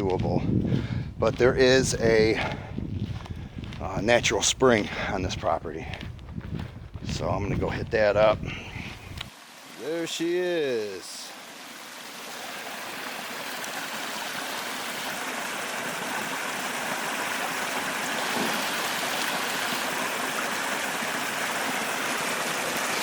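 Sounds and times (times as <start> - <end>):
water trickling: 9.2 - 23.0.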